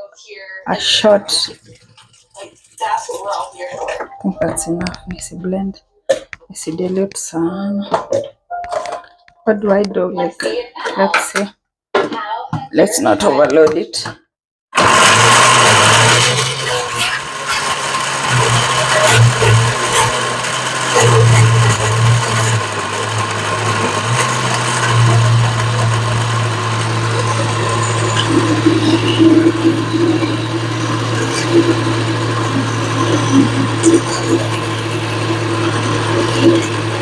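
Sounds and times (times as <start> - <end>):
blender grinding vegetables: 14.8 - 37.0.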